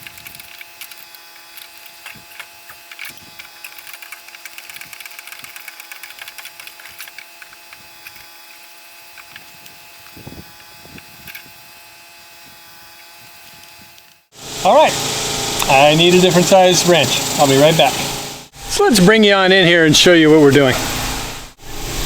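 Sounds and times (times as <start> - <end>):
steady background hum: 14.0 - 22.0.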